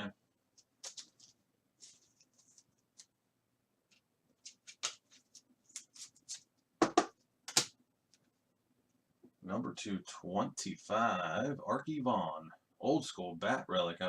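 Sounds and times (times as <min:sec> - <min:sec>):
trading cards rustling and sliding: 0:00.6 - 0:03.1, 0:03.9 - 0:06.5.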